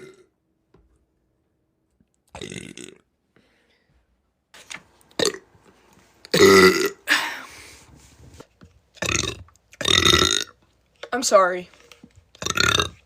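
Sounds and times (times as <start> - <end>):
woman burping: 0.0 - 0.3, 2.3 - 3.0, 6.3 - 7.5.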